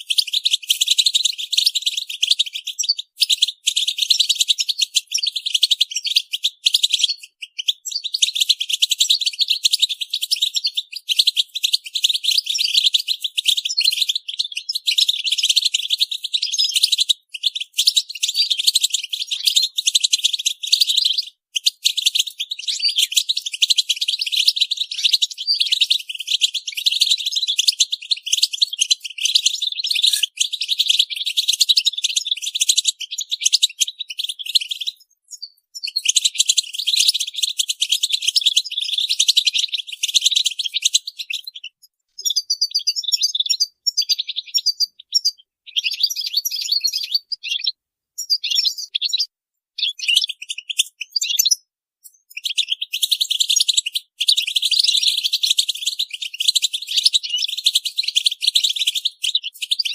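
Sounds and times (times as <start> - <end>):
goldfinches twittering: 29.8 - 30.5.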